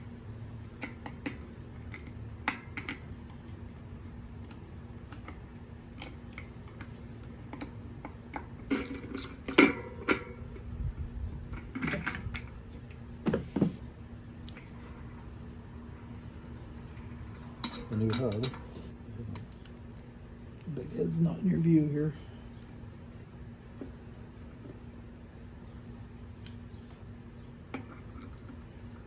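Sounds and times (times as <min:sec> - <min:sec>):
faint steady hum: 0:00.0 - 0:29.0
small metal parts clinking: 0:08.3 - 0:10.4.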